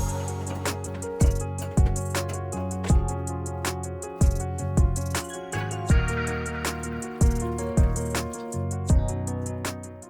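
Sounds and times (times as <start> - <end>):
kick drum: 0.0 - 0.2, 1.2 - 2.2, 2.8 - 3.3, 4.2 - 5.2, 5.9 - 6.3, 7.2 - 8.2, 8.9 - 9.2
guitar: 0.0 - 10.0
hi-hat: 0.0 - 10.0.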